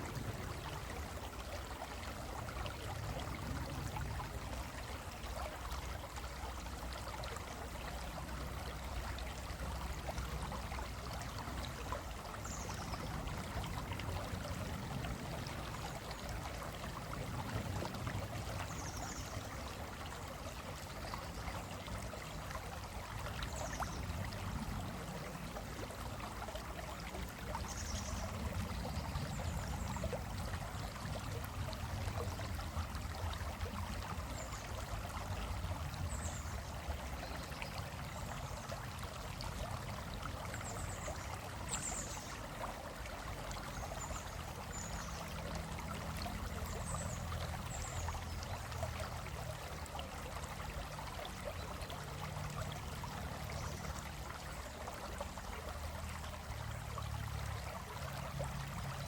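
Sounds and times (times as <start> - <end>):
stream flowing over rocks: 0.0 - 59.0.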